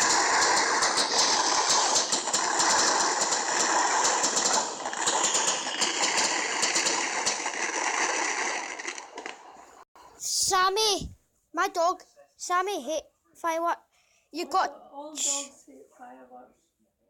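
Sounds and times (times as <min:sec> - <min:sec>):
firework hissing and crackling: 0:00.0 - 0:09.8.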